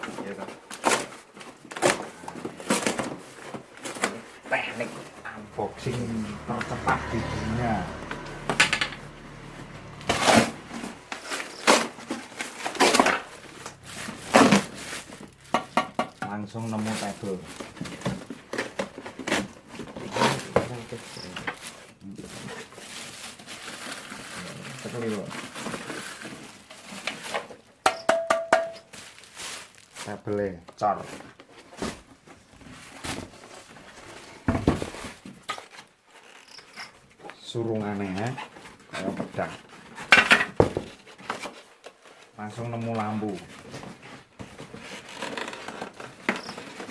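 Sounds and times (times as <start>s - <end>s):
cardboard packaging crunched by hand: 0.0s - 7.1s, 9.1s - 27.8s, 28.7s - 36.5s, 38.0s - 46.9s
parts knocking and clattering: 10.0s - 16.6s, 27.2s - 29.0s, 39.1s - 41.6s.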